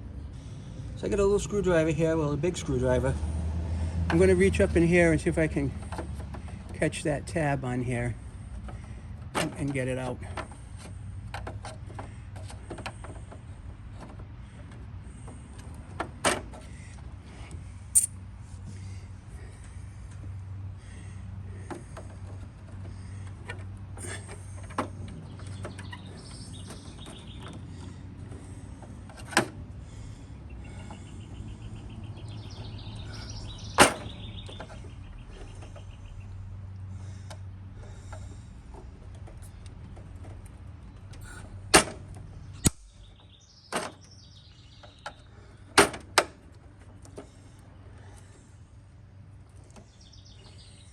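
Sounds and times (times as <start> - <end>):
sharp click: 18.0 - 18.2.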